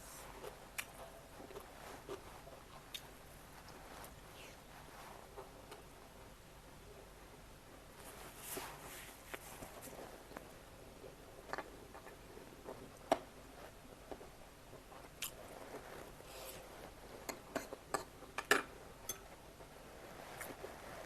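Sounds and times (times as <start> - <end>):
person chewing: 15.1 - 15.8.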